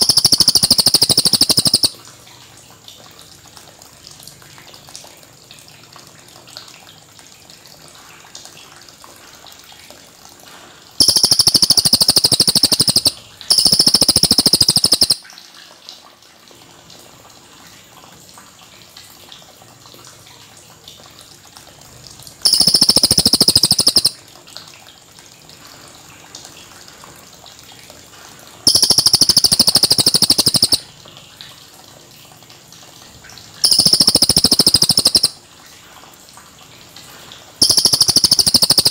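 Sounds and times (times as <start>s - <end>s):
faint steady background hiss: 0.0s - 2.3s, 10.6s - 15.3s, 22.3s - 24.2s, 28.6s - 31.0s, 33.6s - 35.4s.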